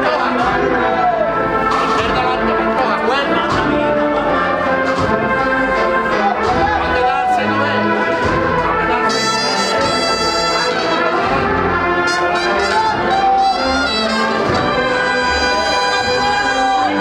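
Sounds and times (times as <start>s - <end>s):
brass band playing a march: 0.0s - 17.0s.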